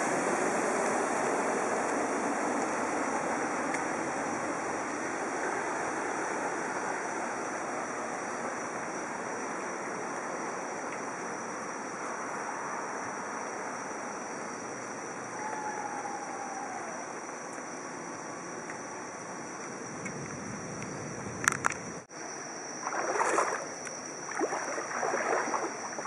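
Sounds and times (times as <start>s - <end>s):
floodwater rushing: 22.8s - 26.0s.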